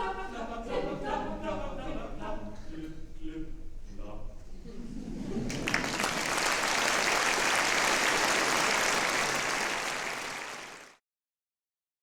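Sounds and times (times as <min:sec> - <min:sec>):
audience applauding: 0:05.4 - 0:11.0.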